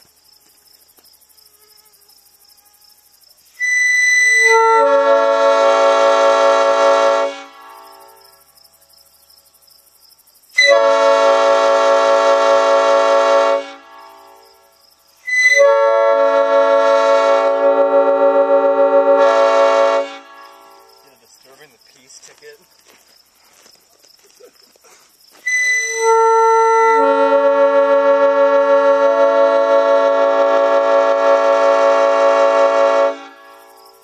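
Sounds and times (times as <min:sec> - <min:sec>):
air horn blasts: 0:03.6 - 0:08.0, 0:10.6 - 0:14.4, 0:15.2 - 0:20.7, 0:25.5 - 0:33.6.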